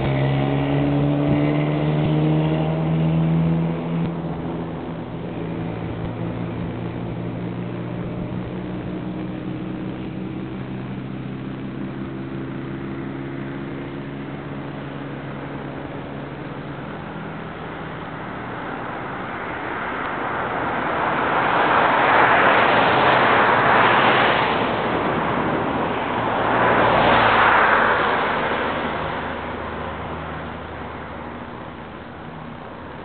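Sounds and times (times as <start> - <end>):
tyre and road noise: 0.0 - 33.0
vehicles passing: 0.0 - 33.0.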